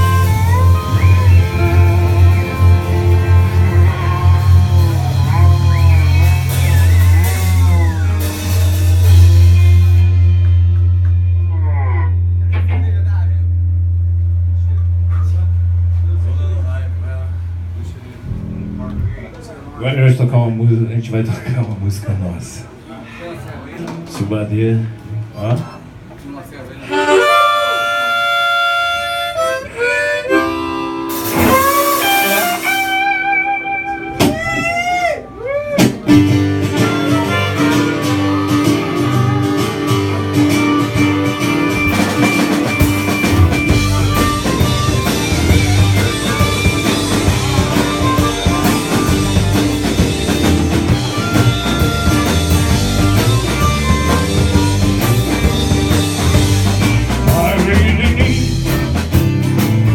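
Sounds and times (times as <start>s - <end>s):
harmonica bending notes: 0.0s - 12.5s, 26.8s - 59.9s
live band playing: 0.0s - 13.0s, 26.8s - 59.9s.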